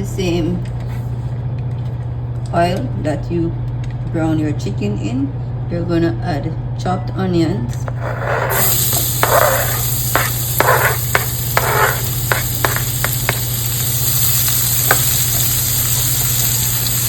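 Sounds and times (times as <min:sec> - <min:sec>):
steady low hum: 0:00.0 - 0:17.0
utensil scraping a pan: 0:07.8 - 0:13.4
onions sizzling in oil: 0:08.1 - 0:17.0.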